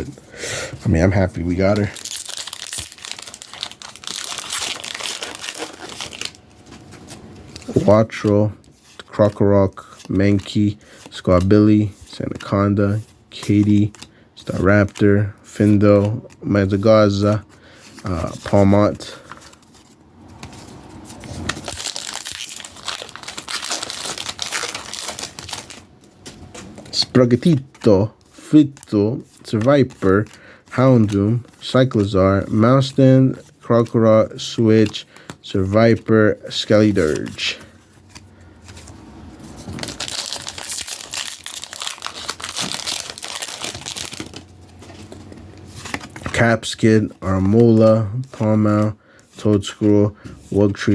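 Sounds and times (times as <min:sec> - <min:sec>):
foil wrapper crinkling and tearing: 0:01.5 - 0:06.4, 0:21.4 - 0:25.9, 0:39.7 - 0:44.5.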